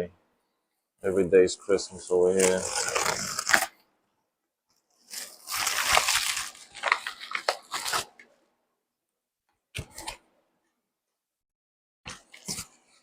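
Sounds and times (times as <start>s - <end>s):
packaging tearing and crinkling: 2.3s - 3.8s, 5.1s - 8.2s.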